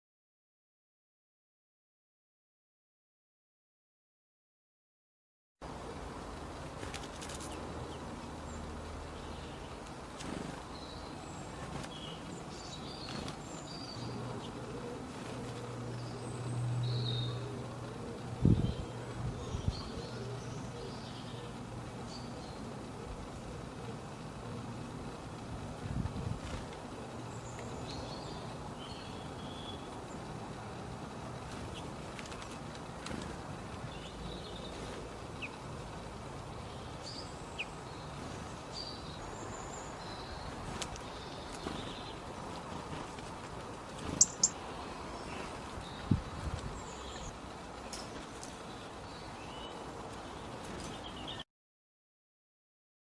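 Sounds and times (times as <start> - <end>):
outdoor background noise: 5.6 - 51.5
bird chirps: 44.0 - 44.6.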